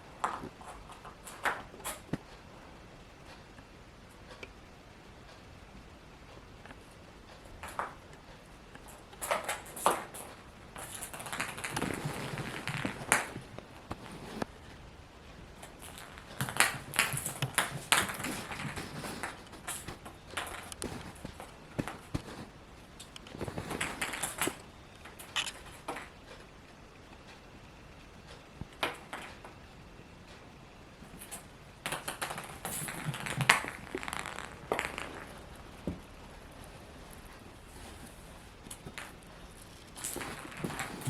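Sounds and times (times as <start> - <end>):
paws scuffling: 15.6 - 22.5.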